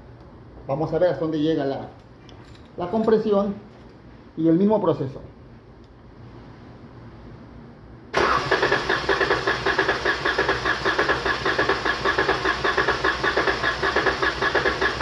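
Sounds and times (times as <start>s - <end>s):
engine cranked by starter: 8.1s - 15.0s.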